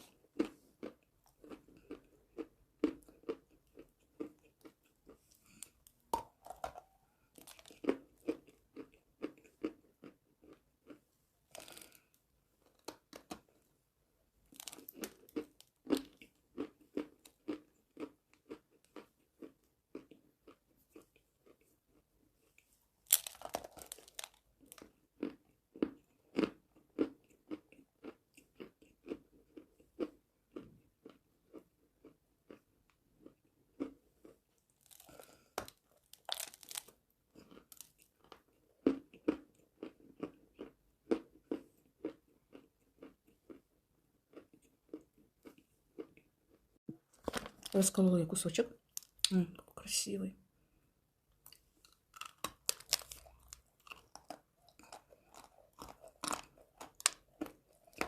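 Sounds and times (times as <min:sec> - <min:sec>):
chewing chalk crunches: 0:00.0 - 0:13.6, 0:14.5 - 0:43.7, 0:51.4 - 0:58.0.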